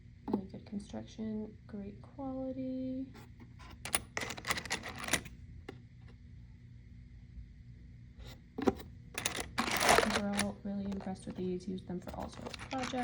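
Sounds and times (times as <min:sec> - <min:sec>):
metal screws clattering: 0:03.6 - 0:05.3, 0:08.6 - 0:11.4, 0:12.0 - 0:13.0.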